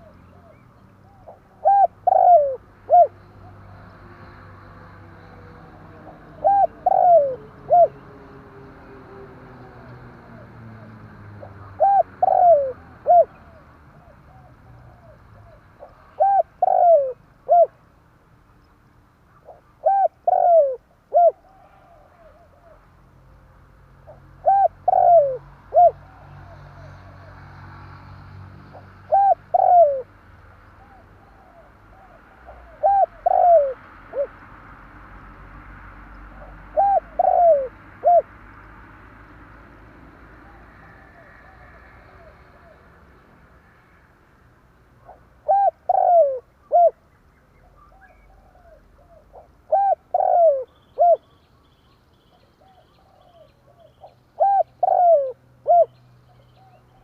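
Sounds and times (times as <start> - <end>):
dove cooing: 0.0 - 3.9, 5.1 - 8.1, 8.8 - 17.8, 19.4 - 22.8, 24.0 - 27.4, 28.7 - 30.1, 30.8 - 34.4, 36.3 - 38.3, 45.0 - 47.0, 47.8 - 51.3, 52.3 - 57.0.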